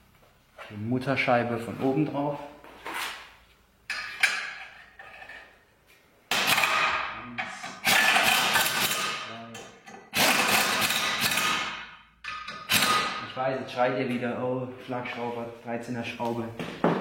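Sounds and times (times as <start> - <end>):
impact wrench bursts: 6.3 - 7.0, 7.7 - 9.3, 10.1 - 13.2.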